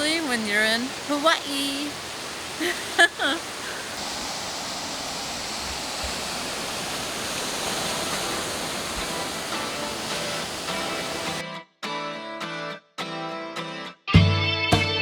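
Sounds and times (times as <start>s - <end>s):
ocean surf washing: 0.0s - 11.4s
faint guitar music: 9.0s - 15.0s.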